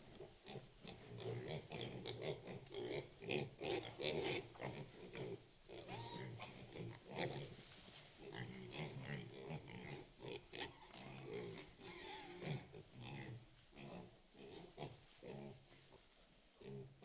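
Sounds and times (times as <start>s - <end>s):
pigs grunting and oinking: 0.1s - 7.5s, 8.2s - 15.6s, 16.6s - 17.0s
pig high-pitched call: 5.8s - 6.5s, 11.8s - 12.6s.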